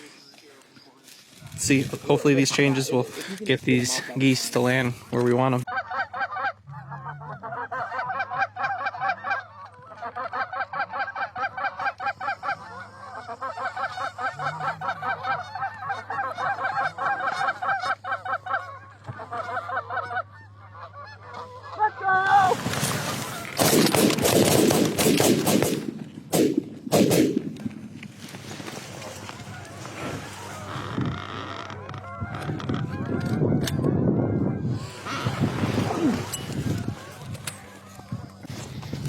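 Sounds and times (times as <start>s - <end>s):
goose honks and clucks: 5.4s - 22.5s, 31.7s - 35.4s, 36.0s - 39.0s
sharp bangs: 23.6s - 27.6s.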